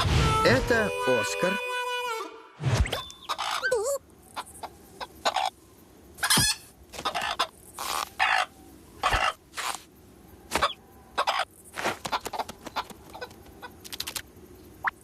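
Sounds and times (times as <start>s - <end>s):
cartoon squawky clucking cries: 0.1s - 2.4s.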